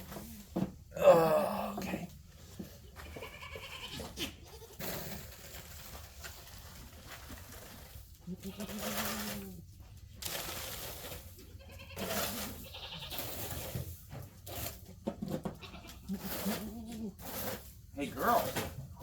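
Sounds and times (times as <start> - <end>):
goats bleating: 2.9 - 4.9, 8.3 - 9.4, 11.5 - 13.3, 15.6 - 17.2.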